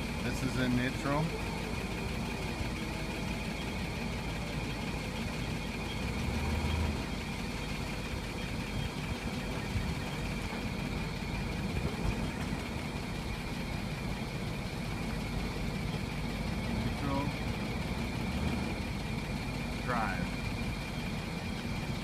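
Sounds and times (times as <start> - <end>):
vehicle engine idling: 0.0 - 22.0.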